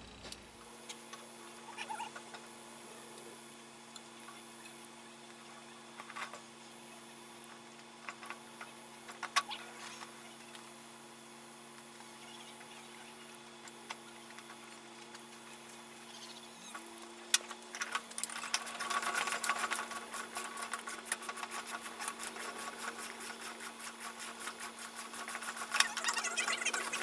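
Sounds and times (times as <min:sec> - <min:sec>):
air pump clattering: 0:16.8 - 0:27.0.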